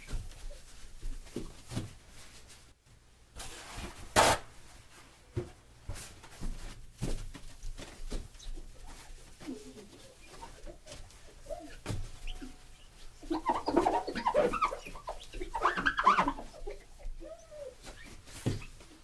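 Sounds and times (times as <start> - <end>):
paper towel squeaking on glass: 8.4 - 19.0.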